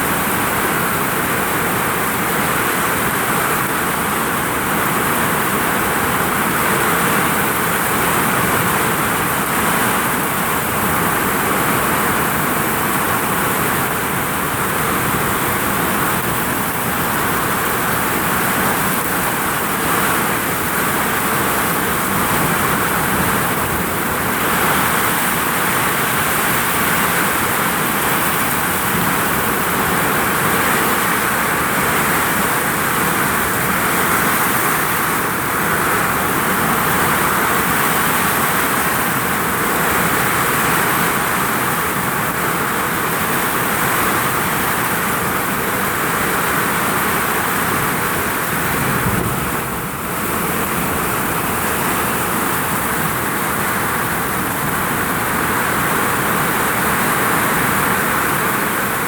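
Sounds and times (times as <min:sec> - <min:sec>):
heavy rain on a roof: 0:00.0 - 0:59.0.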